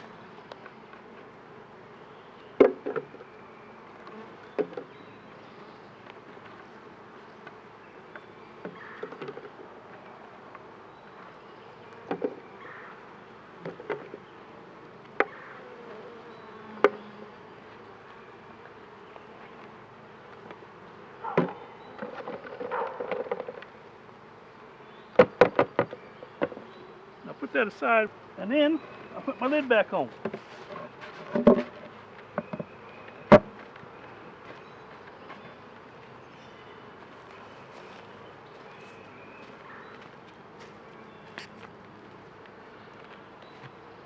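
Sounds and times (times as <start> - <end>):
honeybees buzzing: 0.0 - 44.0
hive equipment clicks and scrapes: 29.0 - 34.2.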